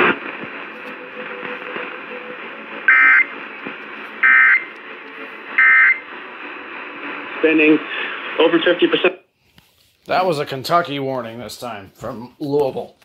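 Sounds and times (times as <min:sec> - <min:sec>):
radio hiss: 0:00.0 - 0:09.3.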